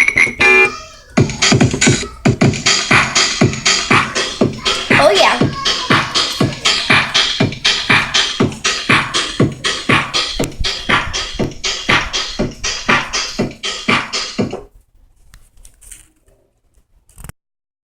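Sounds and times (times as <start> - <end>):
electronic keyboard rhythm: 0.0 - 14.7.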